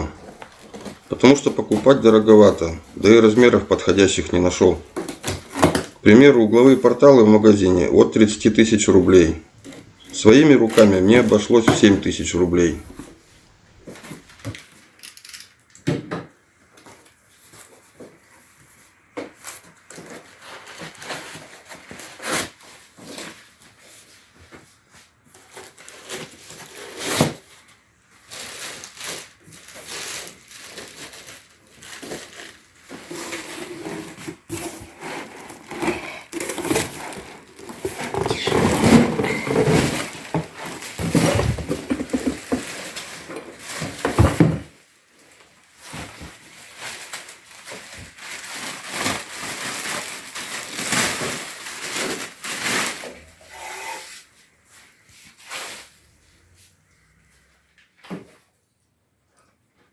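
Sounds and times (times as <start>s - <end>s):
objects being handled: 0.0s - 7.1s, 12.8s - 15.9s, 16.7s - 54.1s.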